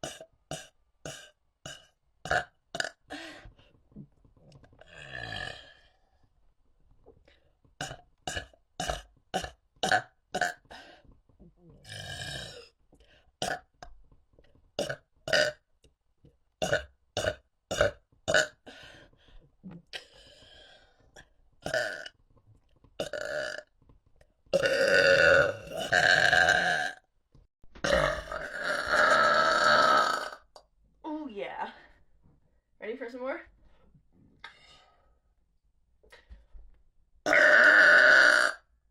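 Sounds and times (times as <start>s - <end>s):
person burping: 0.0s - 3.2s, 4.8s - 5.8s, 7.8s - 10.7s, 11.8s - 12.7s, 13.4s - 13.7s, 14.8s - 15.6s, 16.6s - 18.6s, 21.6s - 22.1s, 23.0s - 23.7s, 24.5s - 27.0s, 27.8s - 30.6s, 37.2s - 38.7s.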